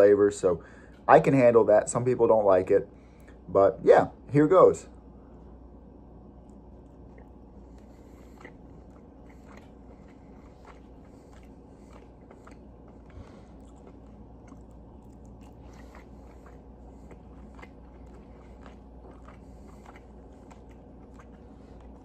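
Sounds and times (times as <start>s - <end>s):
steady low hum: 0.0s - 22.0s
person chewing with mouth clicks: 6.4s - 22.0s.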